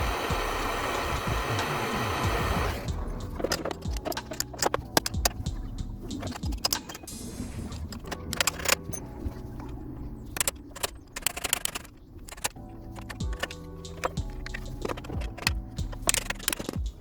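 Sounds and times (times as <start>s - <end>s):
background music: 0.0s - 17.0s
hand tools clicking: 3.4s - 5.4s, 6.1s - 7.1s, 7.7s - 9.0s, 10.3s - 17.0s.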